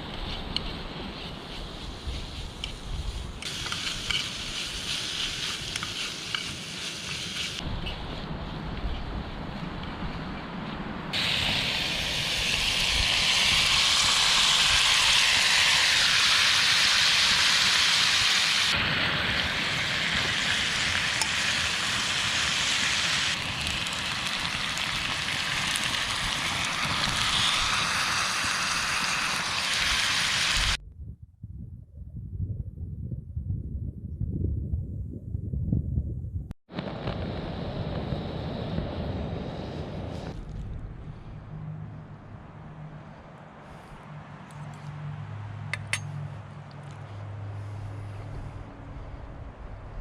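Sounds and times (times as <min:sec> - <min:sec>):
food sizzling in a pan: 0:11.2 - 0:30.8.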